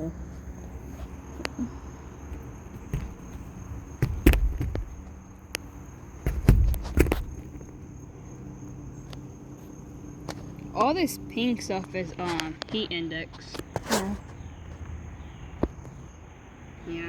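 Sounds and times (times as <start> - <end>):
knocks and dull thumps: 0.3 - 7.8.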